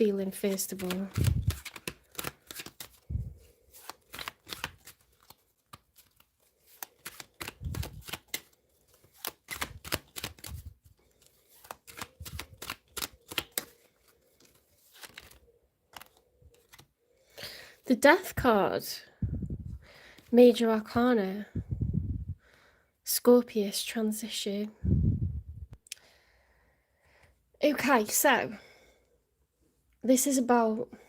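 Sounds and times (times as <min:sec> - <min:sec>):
cards being shuffled: 0:00.3 - 0:16.9.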